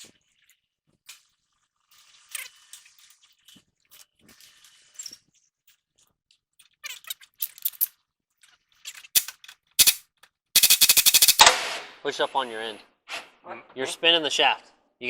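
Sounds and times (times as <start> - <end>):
impact wrench hammering: 9.2 - 10.0, 10.6 - 11.6
tools clicking on metal: 9.2 - 10.0, 10.6 - 11.5.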